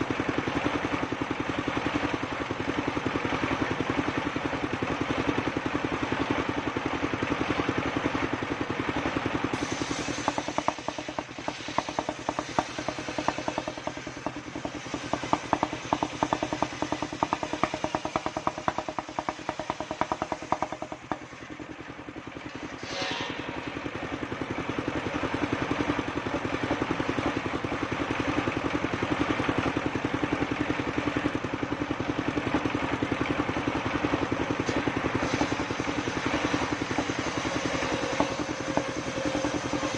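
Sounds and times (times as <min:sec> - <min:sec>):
saw engine running: 0:00.0 - 0:39.9
rapid ticking rattle: 0:08.9 - 0:22.5, 0:24.2 - 0:39.9.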